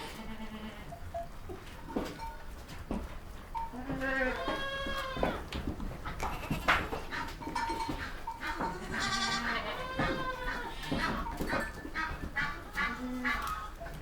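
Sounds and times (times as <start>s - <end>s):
goats bleating: 0.0s - 1.0s, 3.7s - 5.5s, 6.1s - 14.0s.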